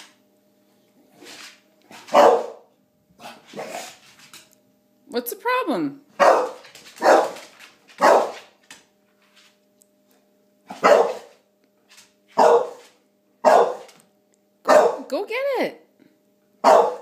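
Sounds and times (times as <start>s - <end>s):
dog barking: 2.1s - 3.9s, 6.2s - 7.4s, 8.0s - 8.4s, 10.7s - 11.3s, 12.4s - 12.8s, 13.4s - 14.0s, 14.7s - 15.1s, 16.6s - 17.0s.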